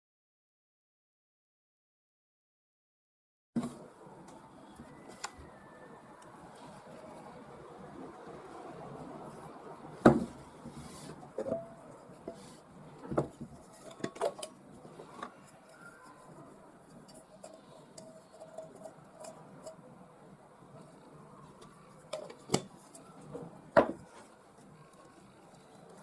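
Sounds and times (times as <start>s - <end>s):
metal tin being handled: 13.2s - 16.0s, 16.8s - 19.8s.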